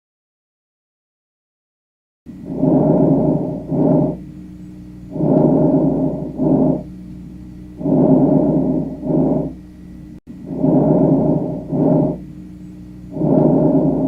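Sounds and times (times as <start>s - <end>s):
faint steady hum: 2.3s - 14.0s
breath sounds through stethoscope: 2.4s - 4.2s, 5.1s - 6.9s, 7.8s - 9.6s, 10.4s - 12.2s, 13.1s - 14.0s.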